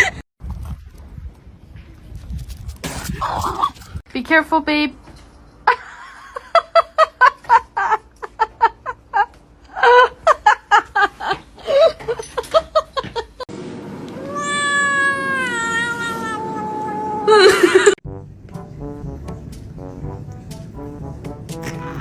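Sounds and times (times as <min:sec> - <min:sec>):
cat yowling: 0:14.2 - 0:17.5.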